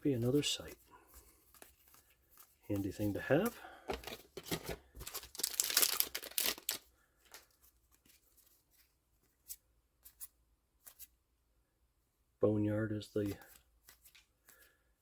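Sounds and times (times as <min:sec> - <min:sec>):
foil wrapper tearing and crinkling: 0:05.0 - 0:06.8.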